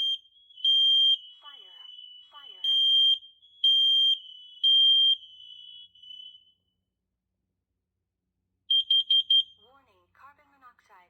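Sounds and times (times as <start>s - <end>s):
short rapid alarm beeps: 0.0s - 6.5s, 8.7s - 9.5s
high-pitched smoke alarm beeps: 0.0s - 6.6s, 8.7s - 9.6s.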